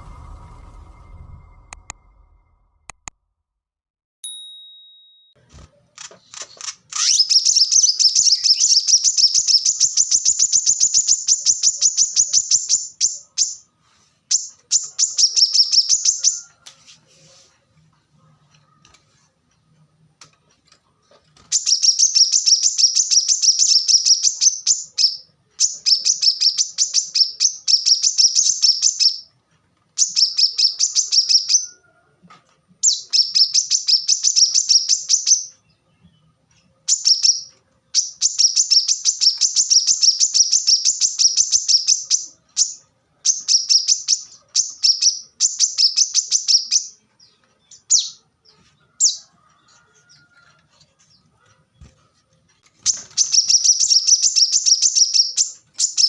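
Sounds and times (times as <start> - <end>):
bird singing high chirps: 6.6 - 13.7, 14.3 - 16.5, 21.5 - 29.3, 32.8 - 36.3, 36.9 - 48.2, 52.8 - 56.0.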